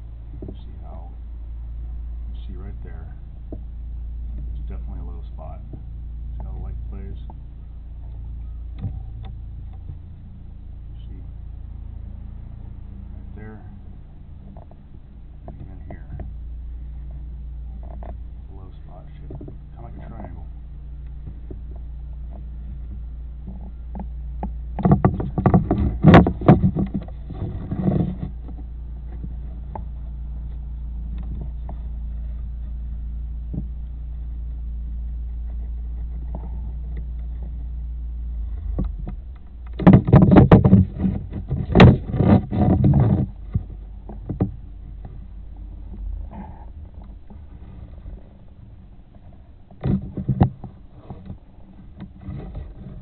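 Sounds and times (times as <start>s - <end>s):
dense clicking and rubbing: 0.0s - 53.0s
steady low hum: 0.0s - 53.0s.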